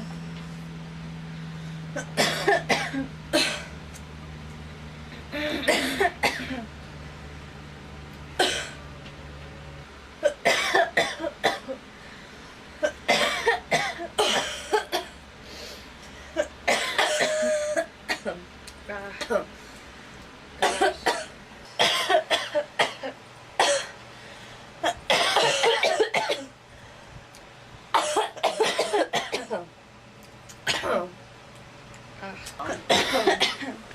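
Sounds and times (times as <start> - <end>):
steady low hum: 0.0 - 33.9
girl coughing: 2.0 - 3.7, 5.4 - 6.7, 8.4 - 8.8, 10.2 - 11.8, 12.8 - 15.1, 16.4 - 18.4, 20.6 - 24.0, 24.8 - 26.5, 28.0 - 29.7, 30.6 - 31.1, 32.6 - 33.8.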